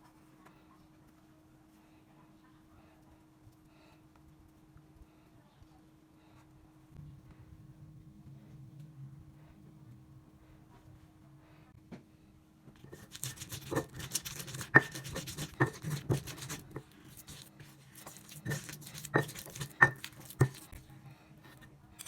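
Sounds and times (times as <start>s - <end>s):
light scraping: 12.8s - 21.8s
utensils knocking on cookware: 12.9s - 16.9s, 18.3s - 20.7s.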